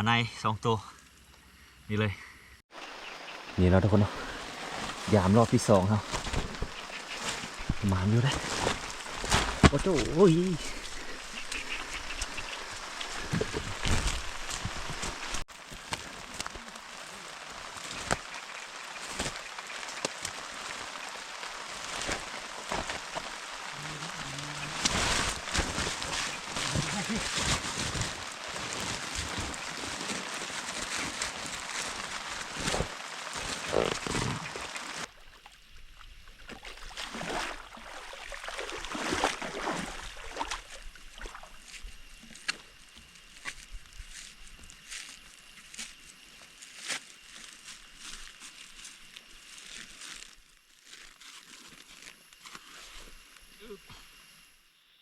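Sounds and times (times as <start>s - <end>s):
steady rain falling: 2.7s - 35.1s
water splashing and sloshing: 4.0s - 43.5s.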